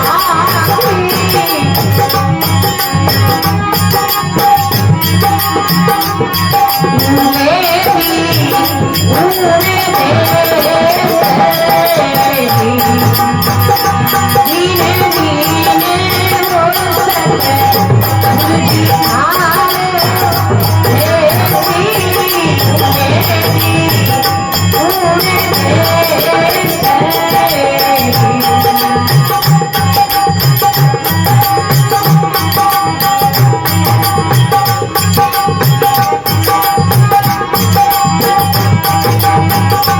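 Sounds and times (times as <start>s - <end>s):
woman singing: 0.0s - 3.1s, 6.7s - 29.5s
held drone tone: 0.0s - 39.9s.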